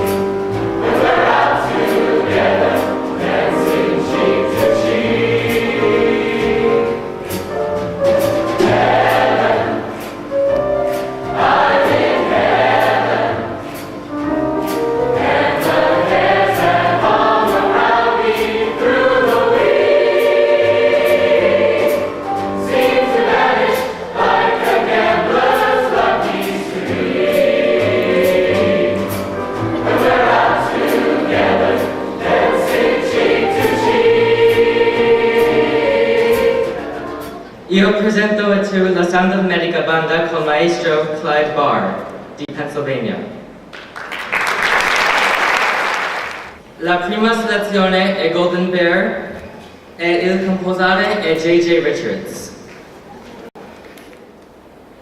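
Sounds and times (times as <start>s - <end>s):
choir singing in harmony: 0.0s - 37.8s.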